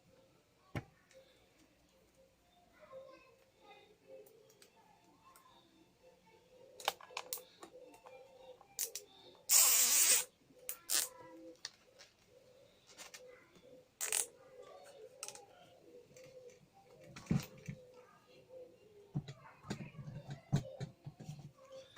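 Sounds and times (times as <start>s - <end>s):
clicks and knocks of handling parts: 6.8s - 8.1s, 15.2s - 15.4s
loud hissing rustle: 9.5s - 11.1s.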